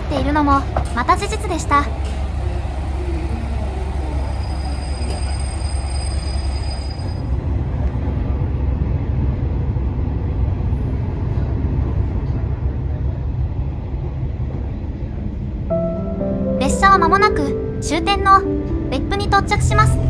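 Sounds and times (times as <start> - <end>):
train wheels rumbling on rails: 0.0 - 15.7
faint high whine: 2.6 - 7.5.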